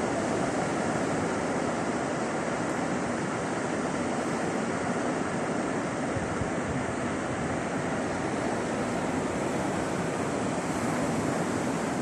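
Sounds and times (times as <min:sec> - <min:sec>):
sea surf rushing: 0:00.0 - 0:12.0
wind on microphone: 0:05.5 - 0:12.0.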